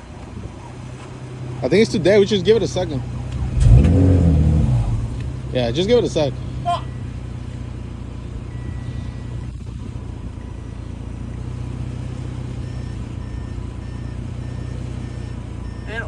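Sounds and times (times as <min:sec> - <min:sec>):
car engine idling: 0:00.0 - 0:16.0
short electronic beeps: 0:08.5 - 0:09.7, 0:12.6 - 0:16.0.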